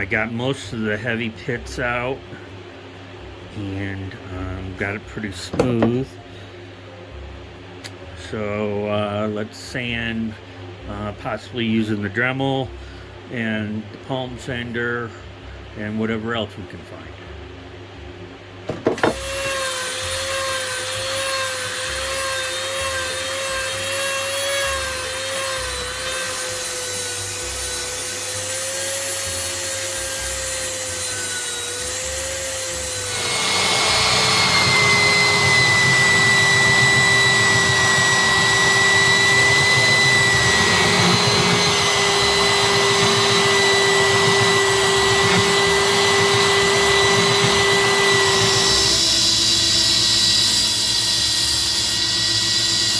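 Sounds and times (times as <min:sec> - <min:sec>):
power tool sanding steel: 0:19.0 - 0:52.9.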